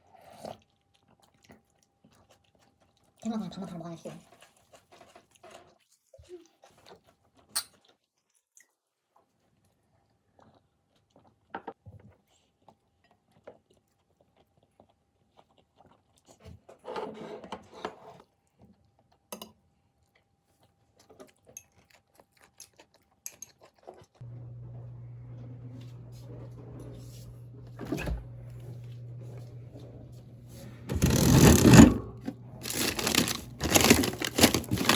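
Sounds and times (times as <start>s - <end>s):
crunchy eating noise: 0.0s - 17.0s, 18.1s - 24.6s, 28.4s - 34.9s
person chewing: 12.6s - 16.4s, 20.0s - 24.2s, 32.6s - 34.9s.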